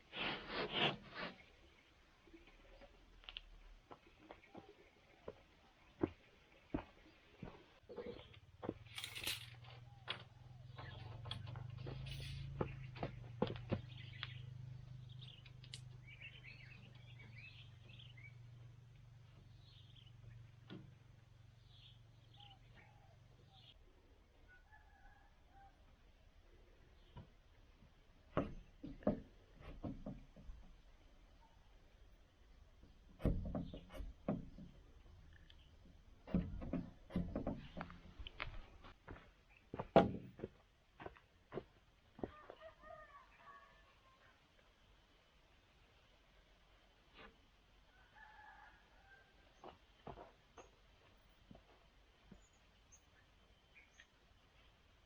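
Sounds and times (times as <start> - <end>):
birds chirping: 1.3 - 23.8.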